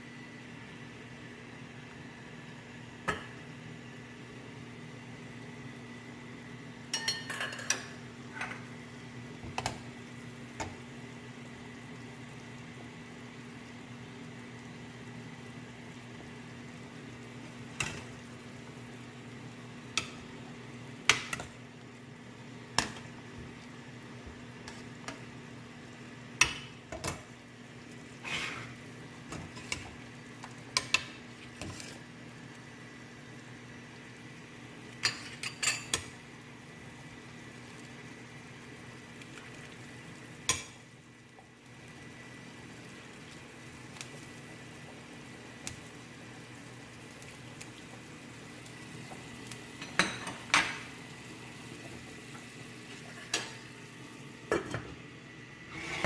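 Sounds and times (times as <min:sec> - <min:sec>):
metal utensil clinking on cookware: 0:06.9 - 0:08.6.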